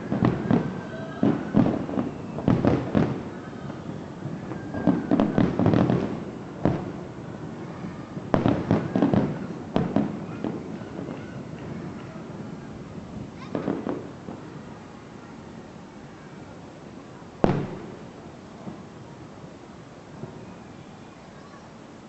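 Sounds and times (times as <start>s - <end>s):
fireworks bursting: 0.0s - 21.6s.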